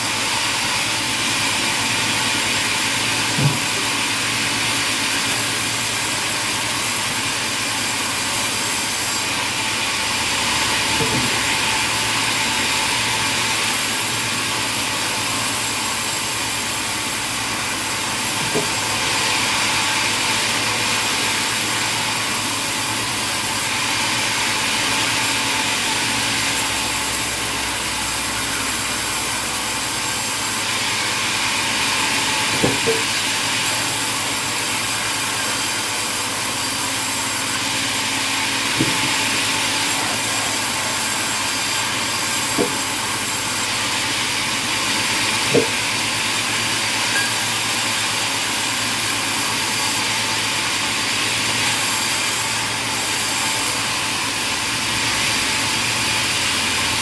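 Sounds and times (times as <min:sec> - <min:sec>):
sawmill saw cutting timber: 0:00.0 - 0:57.0
knocks of wood or metal: 0:03.4 - 0:03.8, 0:32.5 - 0:33.1, 0:38.8 - 0:39.2, 0:42.6 - 0:42.8, 0:45.5 - 0:45.8.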